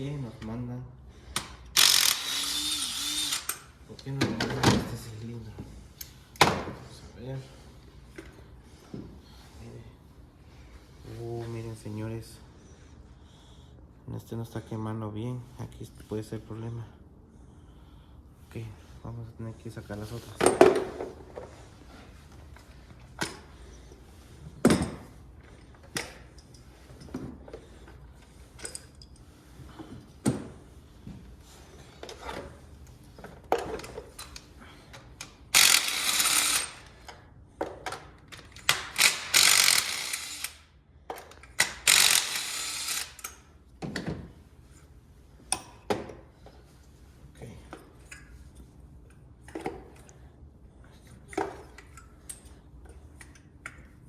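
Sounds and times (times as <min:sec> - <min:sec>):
rapid ratchet clicking: 0:01.7 - 0:03.6, 0:35.5 - 0:36.9, 0:38.6 - 0:40.6, 0:41.6 - 0:43.4
tools clicking and knocking: 0:33.3 - 0:44.2, 0:51.3 - 0:54.0.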